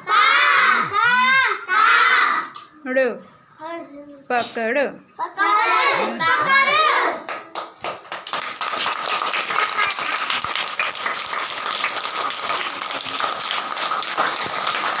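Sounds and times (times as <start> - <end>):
people clapping: 7.1 - 15.0.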